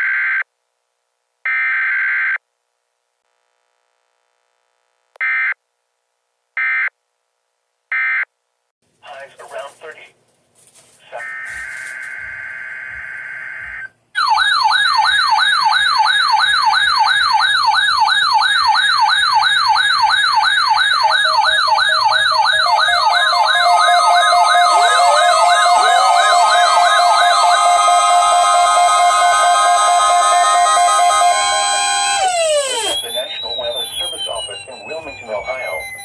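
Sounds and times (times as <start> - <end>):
rising and falling siren alarm: 11.2 - 36.0
steady alarm tones: 11.2 - 36.0
warbling data tone: 17.8 - 36.0.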